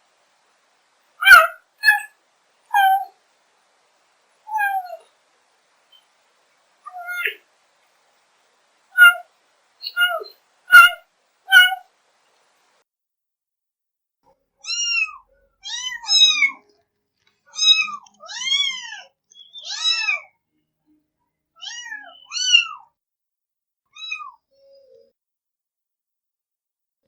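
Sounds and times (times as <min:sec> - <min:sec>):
cat meowing: 0:01.2 - 0:02.1, 0:02.7 - 0:03.1, 0:04.5 - 0:05.0, 0:06.9 - 0:07.4, 0:09.0 - 0:09.2, 0:09.9 - 0:11.8.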